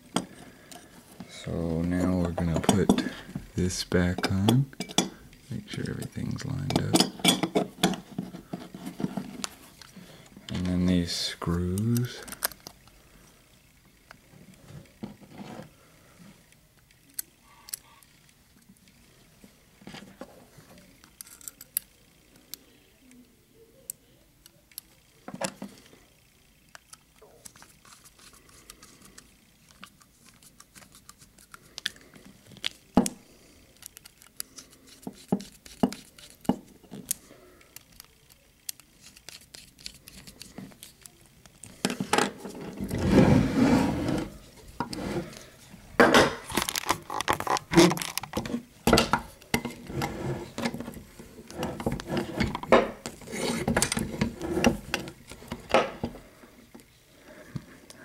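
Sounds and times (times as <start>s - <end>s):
metal parts clicking: 21.0s - 21.9s, 33.8s - 42.9s, 46.4s - 49.8s
scraping rustle: 42.3s - 45.6s.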